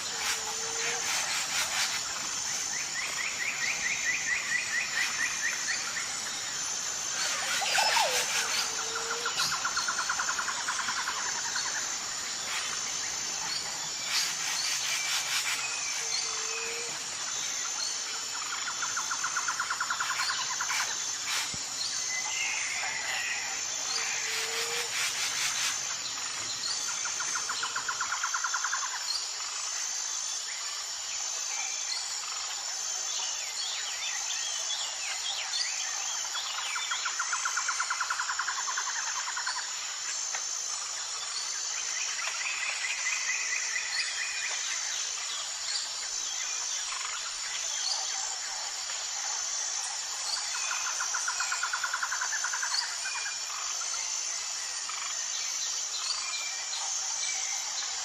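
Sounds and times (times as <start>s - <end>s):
high-pitched insect chorus: 0.0s - 58.0s
rapid insect trill: 0.0s - 58.0s
bird calls: 7.1s - 10.5s.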